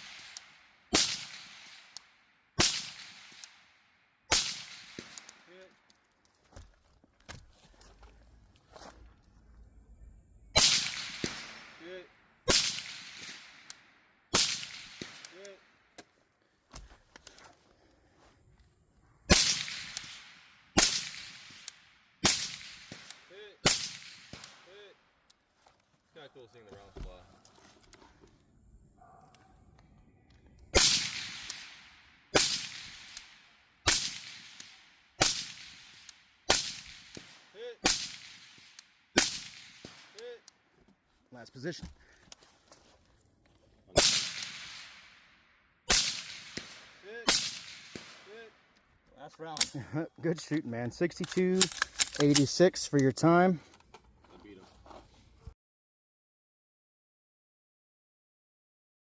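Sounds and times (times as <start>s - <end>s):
echoing rifle shots: 0.0s - 3.7s, 4.3s - 5.4s, 10.6s - 15.5s, 19.3s - 24.8s, 30.7s - 40.2s, 44.0s - 48.4s
gunshots with echo: 44.0s - 45.2s, 45.9s - 48.4s.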